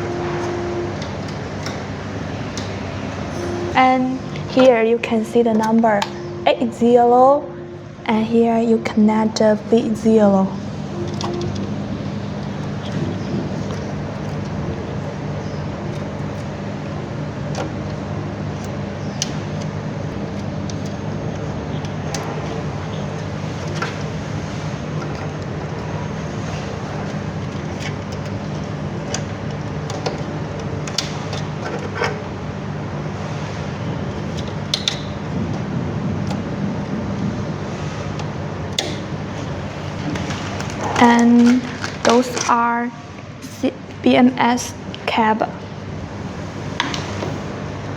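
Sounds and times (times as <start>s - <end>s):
low machine hum: 0.0s - 47.9s.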